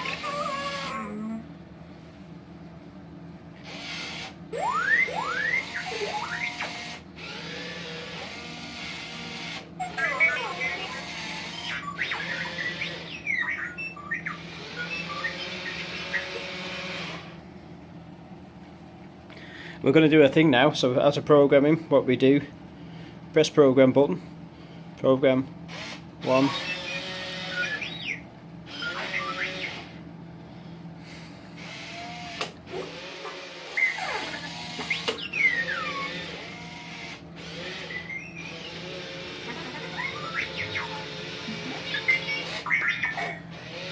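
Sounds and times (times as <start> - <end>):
motors whirring: 0.0 - 1.2, 3.6 - 17.4, 25.7 - 30.0, 31.5 - 43.9
toy robot beeps and whistles: 4.6 - 9.1, 9.8 - 16.7, 26.4 - 30.0, 33.4 - 38.9, 39.5 - 43.6.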